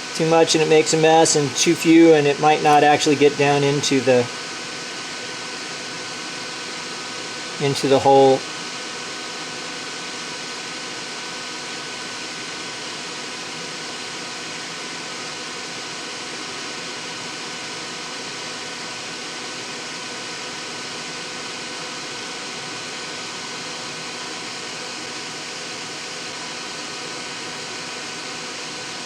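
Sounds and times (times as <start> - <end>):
extractor fan hissing: 0.0 - 14.8
faint steady whine: 0.0 - 29.0.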